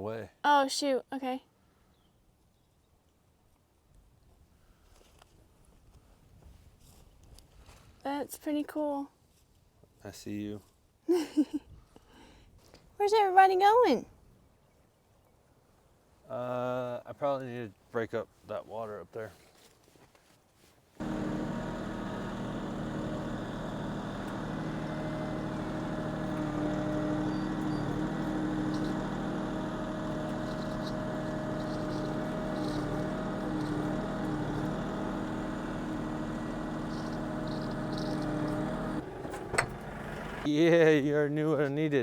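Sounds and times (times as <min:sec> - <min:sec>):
vehicle engine running: 0:21.0 - 0:40.5.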